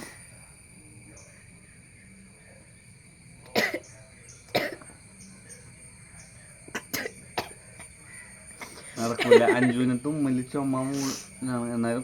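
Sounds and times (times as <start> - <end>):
person coughing: 3.6 - 3.8, 4.6 - 4.8.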